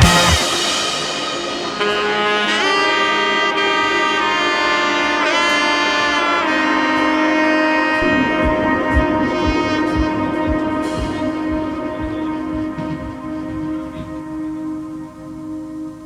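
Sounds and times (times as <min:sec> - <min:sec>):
low beat: 0:00.0 - 0:02.6, 0:08.0 - 0:15.2
melody of sliding held notes: 0:00.0 - 0:16.0.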